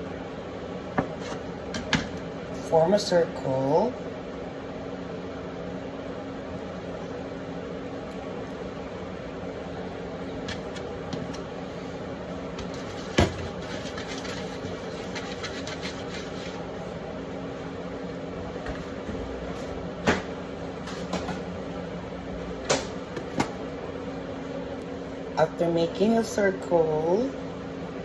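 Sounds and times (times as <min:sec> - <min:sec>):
steady mechanical hum: 0:00.0 - 0:28.0
hands shaping dough: 0:12.5 - 0:16.7.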